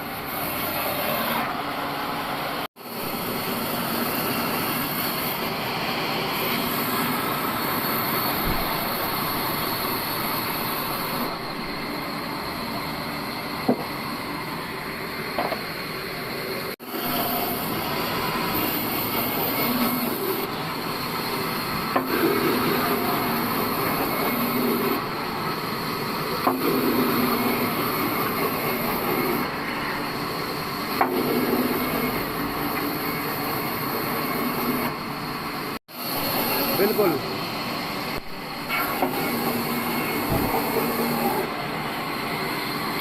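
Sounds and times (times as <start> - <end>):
bandsaw cutting log: 17.0 - 20.6.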